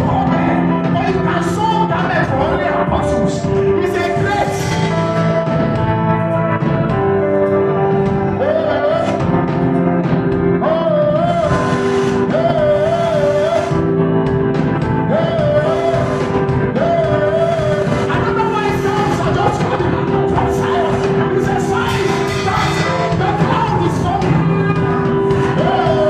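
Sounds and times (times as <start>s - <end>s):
held keyboard chords: 0.0s - 26.0s
person singing with vibrato: 7.3s - 26.0s.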